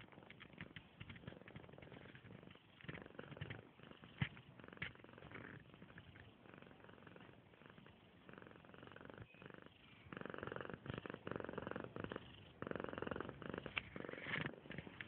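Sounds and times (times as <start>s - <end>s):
rattling snoring: 10.1s - 14.6s.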